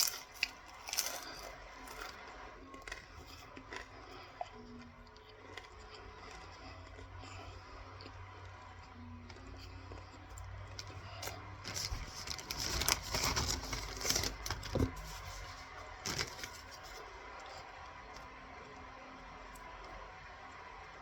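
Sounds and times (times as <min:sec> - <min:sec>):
cornstarch crunching: 0:00.0 - 0:07.5, 0:10.7 - 0:18.3.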